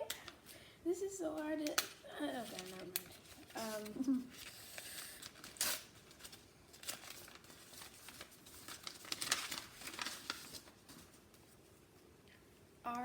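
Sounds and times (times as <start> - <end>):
wrapping crinkled and torn: 1.7 - 11.2.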